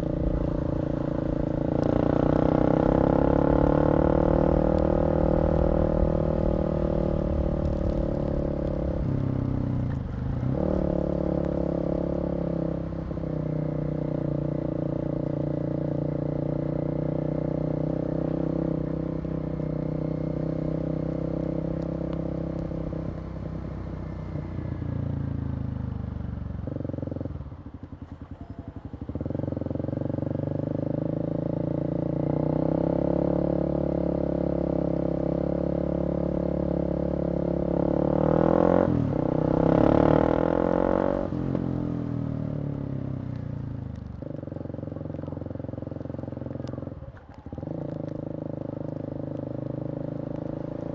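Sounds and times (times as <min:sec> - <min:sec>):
motorcycle engine revving: 0:00.0 - 0:28.2, 0:28.8 - 0:50.9.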